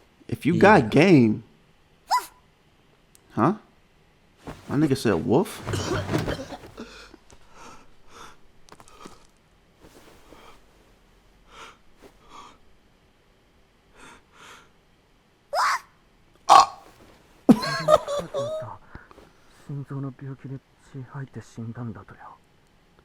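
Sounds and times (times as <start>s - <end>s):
loud voice-like cries: 2.1s - 2.3s, 15.6s - 15.9s, 16.5s - 16.9s, 17.5s - 18.8s.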